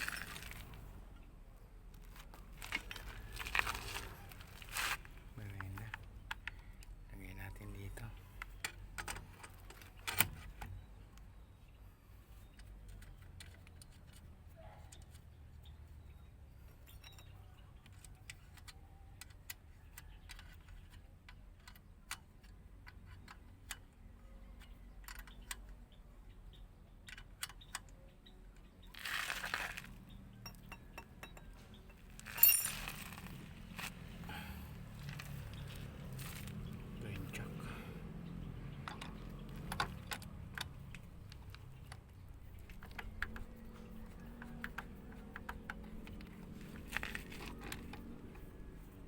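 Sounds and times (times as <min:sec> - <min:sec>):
small metal parts clinking: 0:00.0 - 0:00.8, 0:29.0 - 0:34.1
scraping rustle: 0:00.0 - 0:00.9, 0:02.0 - 0:05.8, 0:28.8 - 0:30.1, 0:32.0 - 0:34.2, 0:46.0 - 0:49.0.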